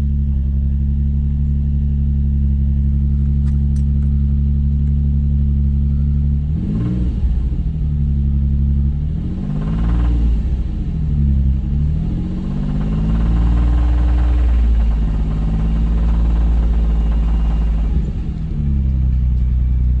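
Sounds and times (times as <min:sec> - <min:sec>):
car engine revving: 0:05.6 - 0:20.0.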